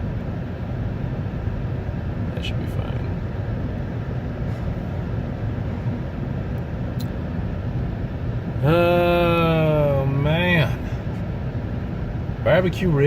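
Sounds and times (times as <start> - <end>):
car engine and tyres rumbling: 0.0 - 13.0
man's voice: 8.6 - 10.9, 12.5 - 13.0.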